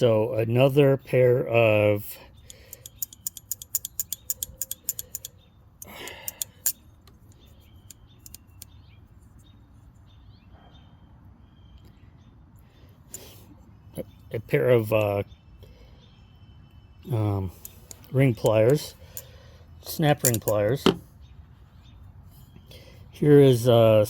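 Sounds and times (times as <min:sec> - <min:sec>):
faint bird chirps: 0:02.2 - 0:14.4, 0:15.0 - 0:19.6, 0:21.1 - 0:23.1
handling clack: 0:02.5 - 0:08.7, 0:20.2 - 0:21.0
pliers clicking: 0:02.5 - 0:08.7, 0:20.2 - 0:20.9.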